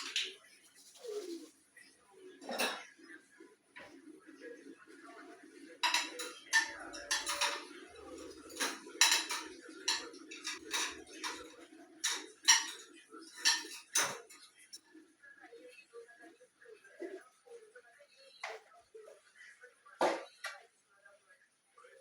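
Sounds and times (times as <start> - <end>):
hard objects clinking together: 5.8 - 14.3.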